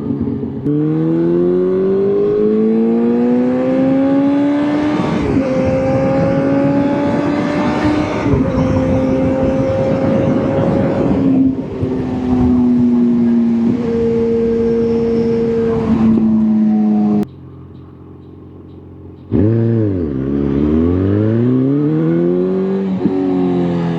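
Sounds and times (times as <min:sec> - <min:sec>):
rushing wind: 0:00.0 - 0:18.0
motorcycle engine accelerating: 0:00.0 - 0:23.9.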